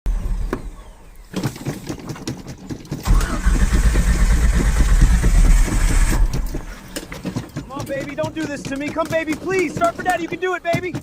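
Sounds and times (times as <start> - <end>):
car engine cranking on starter: 0.1 - 2.3, 2.9 - 7.1.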